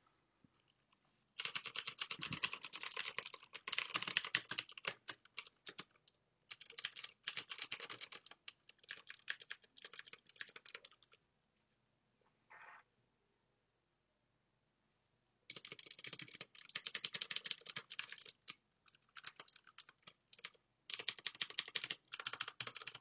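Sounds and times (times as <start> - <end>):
clicky mechanical keyboard typing: 1.4 - 11.2, 15.5 - 23.0.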